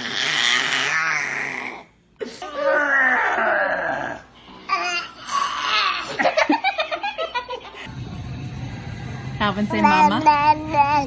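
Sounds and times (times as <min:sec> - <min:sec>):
baby babbling: 0:09.8 - 0:11.0.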